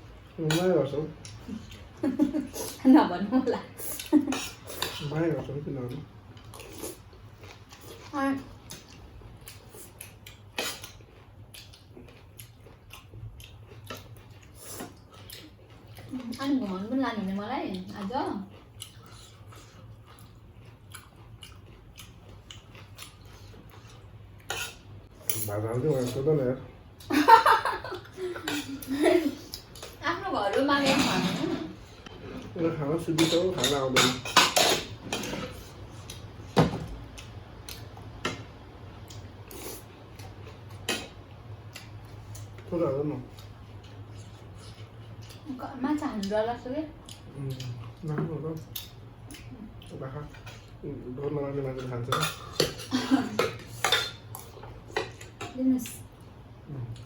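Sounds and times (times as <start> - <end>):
chewing: 5.9 - 16.8, 17.7 - 24.8, 39.0 - 45.5, 47.0 - 50.8
dishes and utensils clinking: 30.8 - 31.8.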